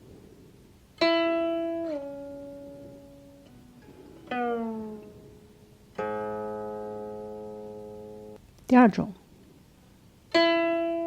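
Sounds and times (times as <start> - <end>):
plucked guqin notes sliding down: 1.0 - 8.4.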